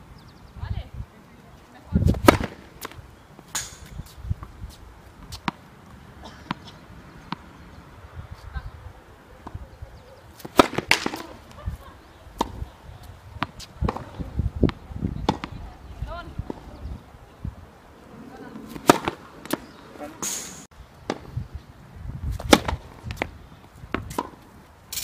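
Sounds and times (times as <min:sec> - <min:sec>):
tennis balls struck by rackets: 0:02.0 - 0:04.6, 0:05.2 - 0:07.6, 0:10.3 - 0:11.6, 0:12.3 - 0:15.6, 0:18.5 - 0:21.4, 0:22.3 - 0:25.0
tennis balls bouncing on court: 0:02.1 - 0:07.6, 0:10.4 - 0:11.6, 0:12.3 - 0:15.7, 0:18.5 - 0:20.0, 0:22.3 - 0:24.6.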